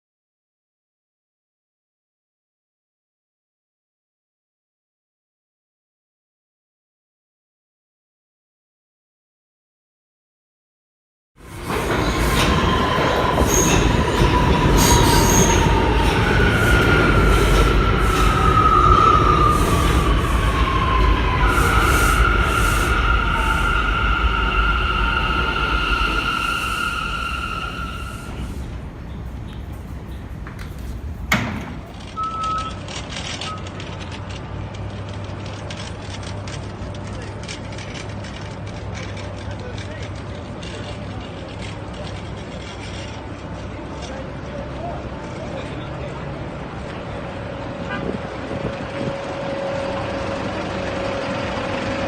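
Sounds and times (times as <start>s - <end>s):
subway train rumbling: 11.4s - 52.0s
wheels squealing: 11.5s - 46.1s
sharp clunk: 31.3s - 31.9s
short beeps: 32.1s - 32.8s.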